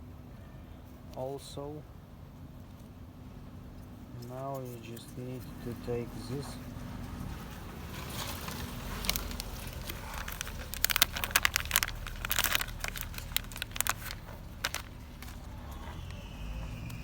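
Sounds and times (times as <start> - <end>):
steady low hum: 0.0 - 17.0
small parts clicking and rustling: 6.3 - 17.0.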